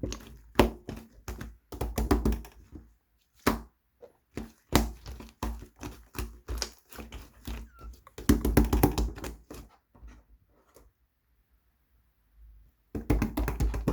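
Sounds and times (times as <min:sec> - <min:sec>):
slime squished by hand: 0:00.0 - 0:09.7.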